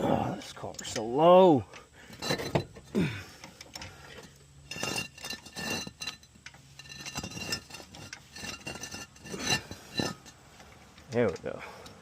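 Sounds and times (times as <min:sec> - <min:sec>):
floor jack metal clanks: 0:02.1 - 0:02.9.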